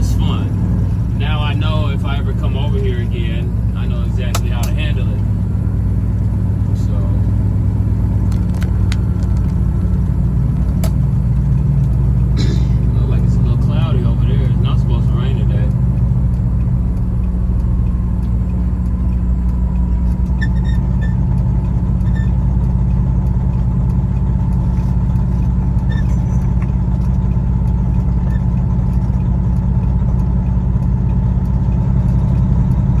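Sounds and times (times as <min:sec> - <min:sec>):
truck diesel engine drone: 0:00.0 - 0:33.0
small ticks: 0:15.7 - 0:33.0.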